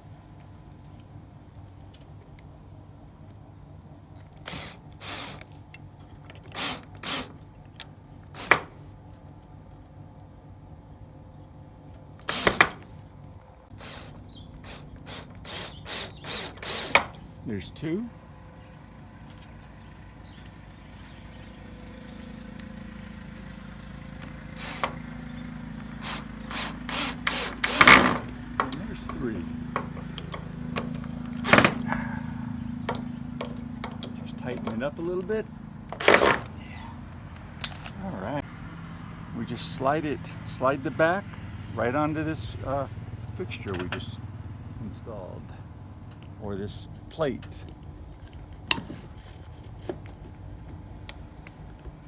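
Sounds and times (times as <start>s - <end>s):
low motor hum: 0.0s - 52.0s
drill driving screw into wood: 4.4s - 5.6s, 6.4s - 7.4s, 8.3s - 8.9s, 12.2s - 13.0s, 13.7s - 17.3s, 24.2s - 25.0s, 25.9s - 29.2s, 30.8s - 32.1s, 35.9s - 36.6s
short whirring burst: 4.4s - 5.6s, 6.5s - 7.4s, 8.3s - 8.9s, 12.2s - 13.0s, 13.7s - 17.3s, 24.2s - 25.0s, 25.9s - 28.5s, 31.4s - 32.4s.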